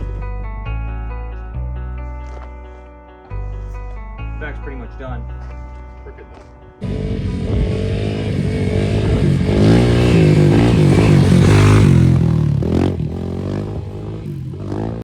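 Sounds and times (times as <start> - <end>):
quad engine revving: 6.8 - 15.0.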